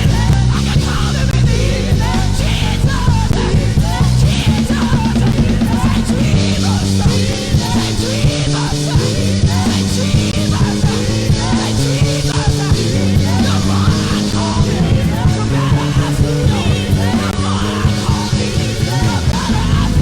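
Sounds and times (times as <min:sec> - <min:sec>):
bass and electric guitar: 0:00.0 - 0:20.0
drum kit beat: 0:00.0 - 0:20.0.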